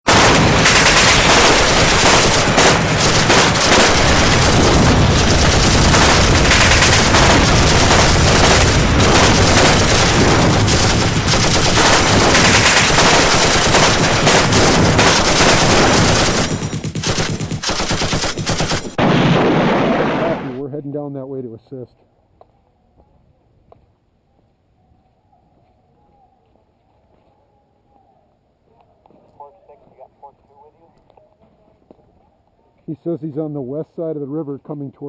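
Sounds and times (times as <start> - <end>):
rapid automatic gunfire: 0.1 - 20.6.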